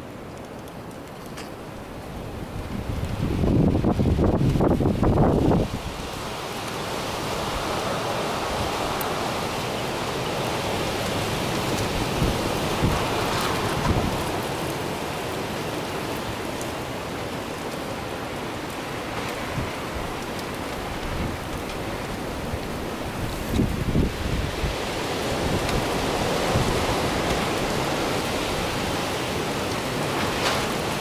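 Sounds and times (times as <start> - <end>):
blizzard wind blowing: 0.0 - 31.0
wind buffeting microphone: 1.7 - 6.2, 10.5 - 15.7, 18.8 - 31.0.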